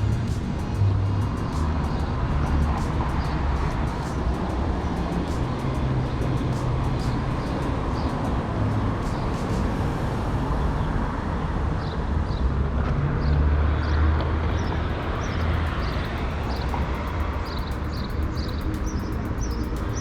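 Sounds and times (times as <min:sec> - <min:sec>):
vehicle engine running: 0:14.2 - 0:20.0
small birds chirping: 0:14.4 - 0:20.0.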